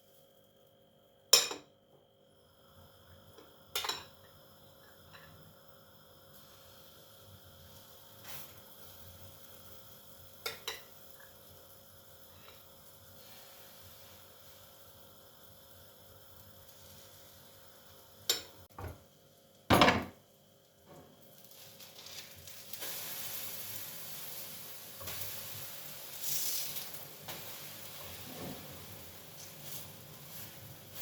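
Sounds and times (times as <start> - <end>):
food sizzling in hot pan: 2.5 - 18.7, 20.4 - 31.0
kitchenware clattering: 19.7 - 20.2.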